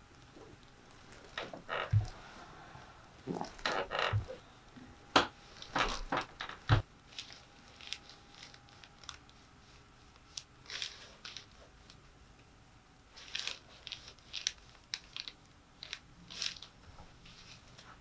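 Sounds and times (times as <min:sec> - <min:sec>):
rustling and crinkling: 0:00.0 - 0:04.4, 0:05.2 - 0:12.1, 0:13.1 - 0:18.0
dull thumps: 0:01.3 - 0:02.2, 0:03.3 - 0:04.4.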